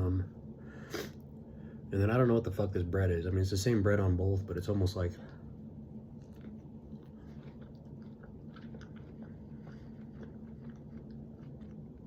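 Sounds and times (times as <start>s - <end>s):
steady low hum: 0.0s - 12.0s
person chewing: 5.2s - 12.0s.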